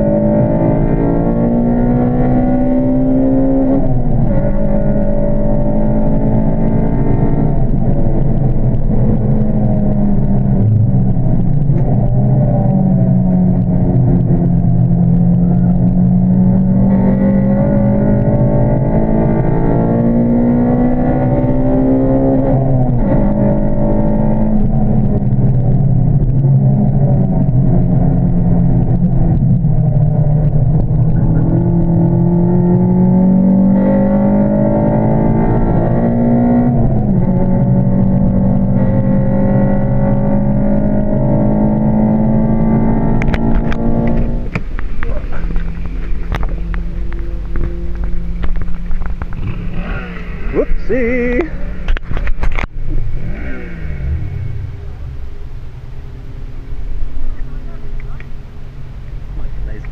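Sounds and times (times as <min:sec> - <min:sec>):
car engine revving through gears: 0:00.0 - 0:55.3.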